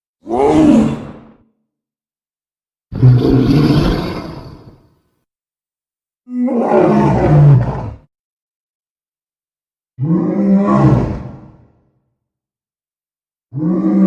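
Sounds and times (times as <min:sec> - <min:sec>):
monster roar: 0:03.0 - 0:04.9.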